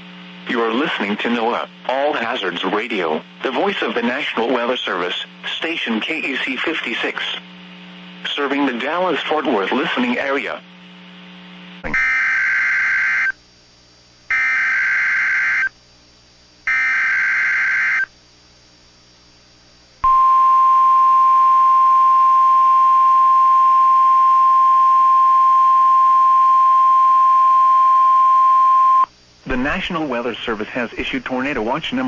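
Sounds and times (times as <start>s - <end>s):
steady warning alarm tone: 11.9s - 13.4s, 14.3s - 15.7s, 16.7s - 18.1s
screeching data bursts: 14.3s - 15.7s, 16.7s - 18.1s.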